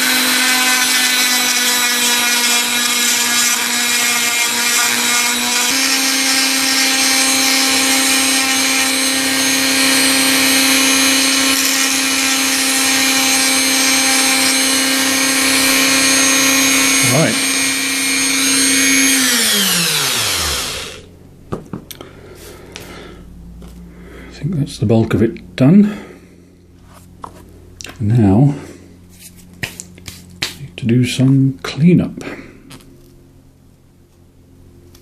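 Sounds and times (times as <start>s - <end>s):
rotary power tool whining: 0.0s - 21.2s.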